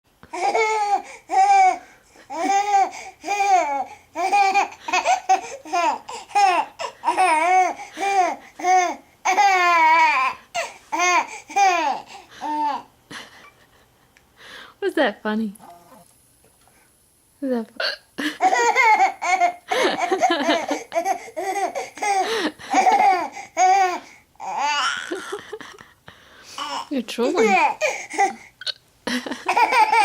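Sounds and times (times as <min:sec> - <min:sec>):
baby giggling: 0:18.4 - 0:25.8, 0:26.6 - 0:30.0.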